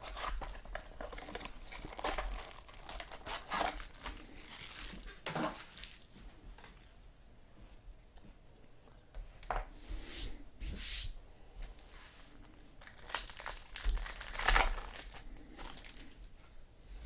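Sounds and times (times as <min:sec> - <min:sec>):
wrappers tearing and crinkling: 0:00.0 - 0:06.1, 0:12.8 - 0:16.2.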